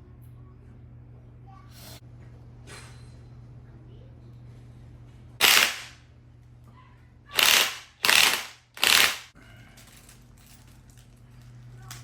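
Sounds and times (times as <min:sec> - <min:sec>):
ratchet clicking: 0:05.4 - 0:06.0, 0:07.4 - 0:09.4.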